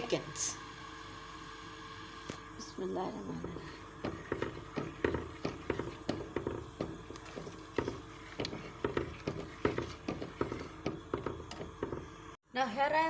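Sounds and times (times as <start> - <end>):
spoon stirring in a pan: 3.4 - 12.3.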